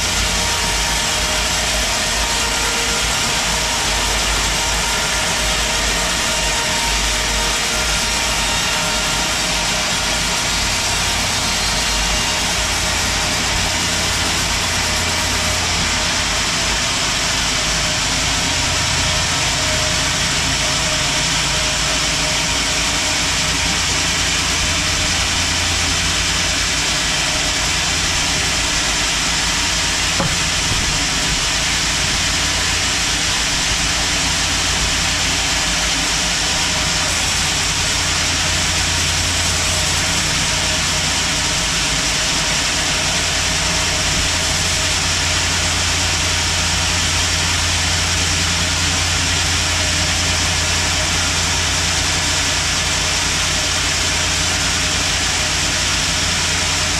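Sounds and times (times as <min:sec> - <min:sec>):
sawmill machinery hissing and rumbling: 0:00.0 - 0:56.9.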